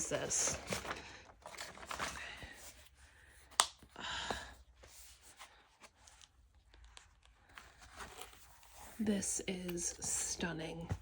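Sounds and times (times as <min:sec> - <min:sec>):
soft rustling: 0:04.7 - 0:11.0.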